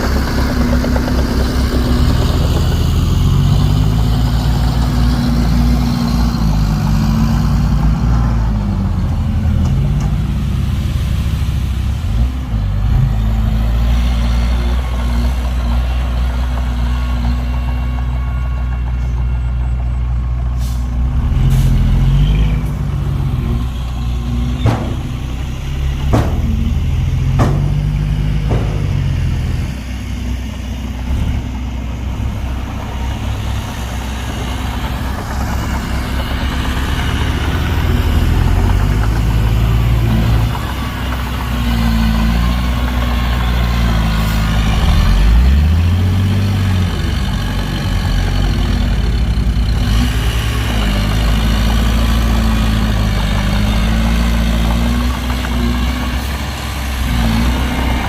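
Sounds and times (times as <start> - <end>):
heavy diesel engines droning: 0.0 - 58.0
sharp metallic clanks: 24.5 - 29.3.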